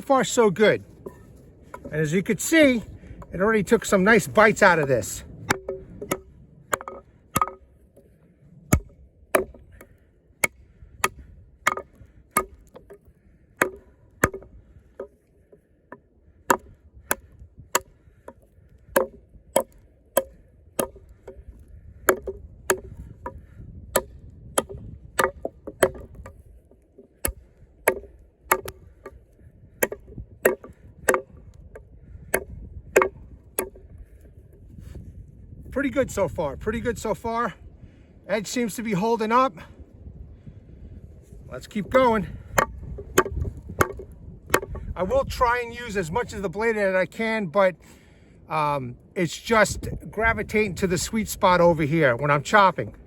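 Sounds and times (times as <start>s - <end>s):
wind rumble on microphone: 0.0s - 15.0s, 16.2s - 46.8s, 48.8s - 53.0s
knife chopping wood: 5.4s - 7.7s, 8.7s - 15.2s, 16.4s - 34.1s, 41.8s - 45.1s.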